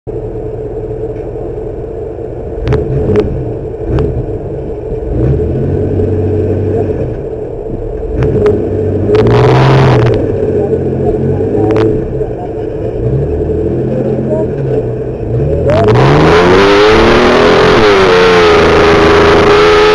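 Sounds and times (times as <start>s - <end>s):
truck engine running hard: 0.1s - 19.9s.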